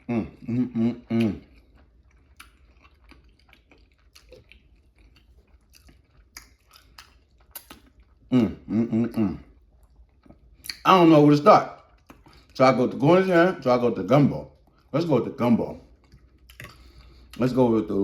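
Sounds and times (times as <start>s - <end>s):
chewing clicks and smacks: 1.1s - 8.2s, 9.7s - 10.9s, 11.7s - 12.6s, 15.9s - 17.5s.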